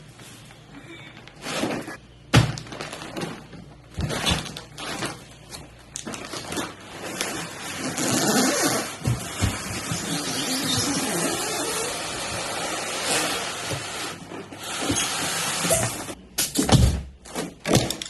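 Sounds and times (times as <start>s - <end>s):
packaging rustling and crinkling: 2.6s - 10.2s.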